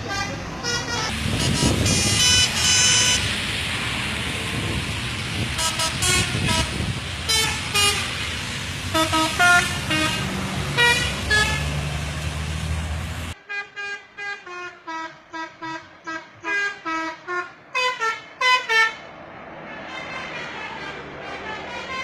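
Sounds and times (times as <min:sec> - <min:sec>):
bus musical horn: 0:00.0 - 0:03.3, 0:05.5 - 0:08.2, 0:08.9 - 0:11.8, 0:13.4 - 0:19.0, 0:19.7 - 0:22.0
bus engine rumble: 0:00.0 - 0:22.0.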